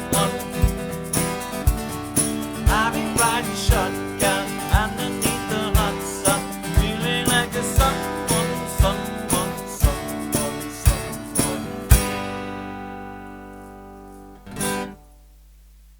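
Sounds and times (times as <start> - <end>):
percussion beat: 0.0 - 12.5
acoustic guitar strumming: 0.0 - 15.2.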